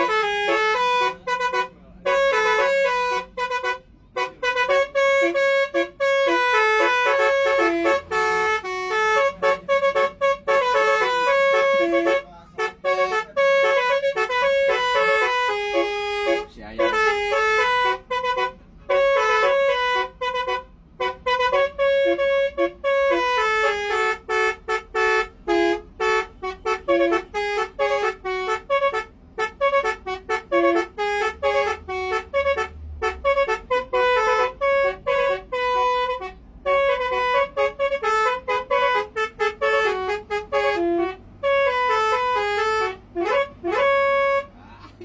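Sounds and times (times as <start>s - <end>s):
musical air horn melody: 0.0s - 44.6s.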